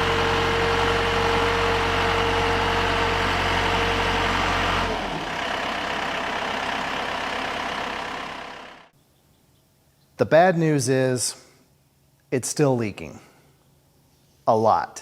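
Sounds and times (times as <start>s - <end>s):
backhoe engine running: 0.0s - 9.0s.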